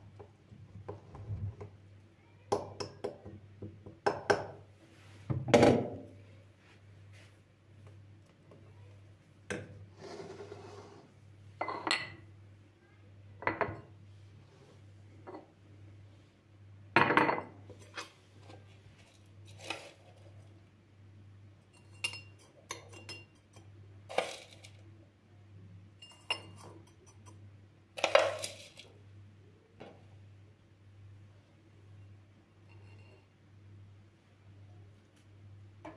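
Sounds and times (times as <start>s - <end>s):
dishes and glassware clinking: 11.6s - 12.2s, 17.0s - 18.1s, 21.7s - 24.8s, 26.0s - 27.4s, 32.6s - 33.3s.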